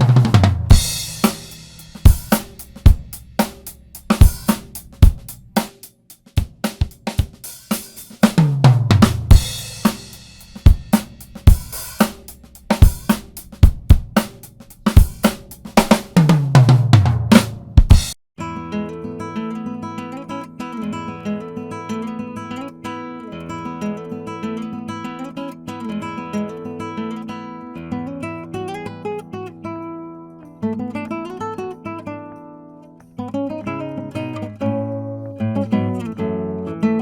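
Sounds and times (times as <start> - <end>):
low drum fill falling in pitch: 0.0 - 5.8, 6.4 - 18.2
drum kit groove: 0.0 - 18.2.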